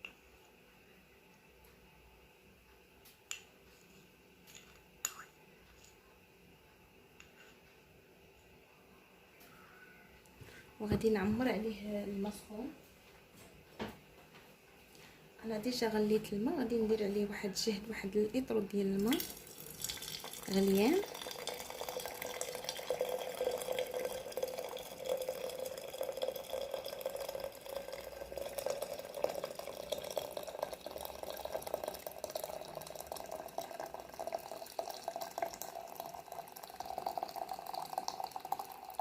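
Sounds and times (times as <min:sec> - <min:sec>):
water pouring into a vessel: 0:19.0 - 0:39.0.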